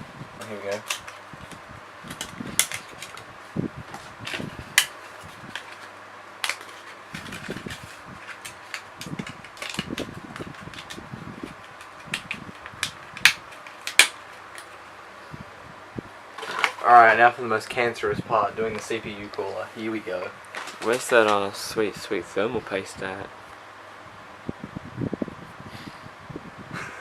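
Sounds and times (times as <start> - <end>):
steady background hiss: 0.0 - 27.0
computer parts and packaging clicking: 0.4 - 3.3, 3.9 - 14.9, 16.4 - 16.9, 20.4 - 21.6.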